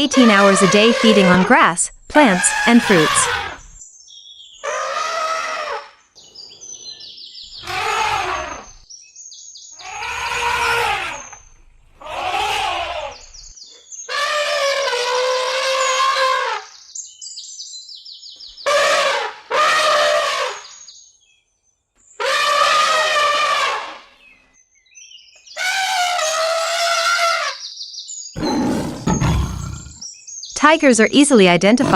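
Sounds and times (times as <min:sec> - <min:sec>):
elephant trumpeting: 0:00.0 - 0:03.8, 0:04.6 - 0:05.9, 0:07.6 - 0:08.8, 0:09.8 - 0:11.3, 0:12.0 - 0:13.3, 0:14.1 - 0:16.7, 0:18.7 - 0:20.6, 0:22.2 - 0:24.1, 0:25.6 - 0:27.6, 0:28.4 - 0:30.0
birds chirping: 0:00.0 - 0:04.8, 0:06.2 - 0:14.2, 0:24.1 - 0:31.9.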